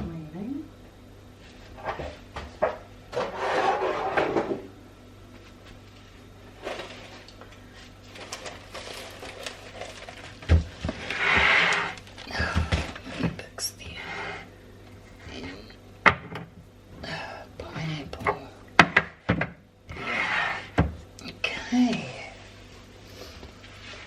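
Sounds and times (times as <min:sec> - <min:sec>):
household items sliding and rubbing: 0:03.2 - 0:04.5, 0:06.0 - 0:12.1, 0:19.9 - 0:20.8, 0:22.6 - 0:24.0
long scrape: 0:19.9 - 0:20.8.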